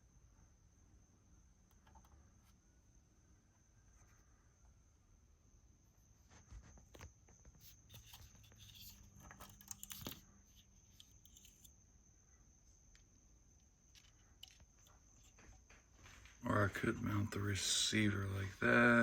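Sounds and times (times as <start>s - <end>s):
small parts clicking and rustling: 6.6s - 11.8s, 12.9s - 16.3s.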